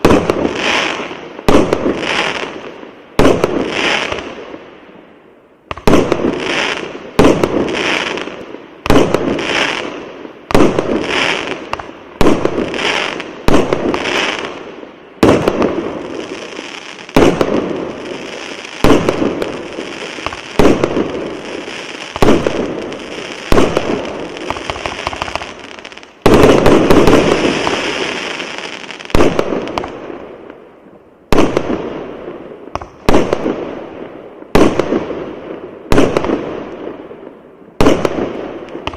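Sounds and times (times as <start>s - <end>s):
fireworks crackling: 0.0s - 5.0s, 5.7s - 30.6s, 31.3s - 38.9s
fireworks banging: 5.7s - 30.2s, 37.8s - 38.9s.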